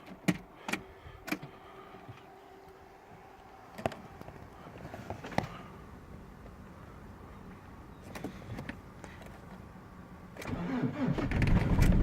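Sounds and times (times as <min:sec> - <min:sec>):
faint hum: 0:00.4 - 0:10.4
starter cranking diesel engine: 0:10.4 - 0:12.0.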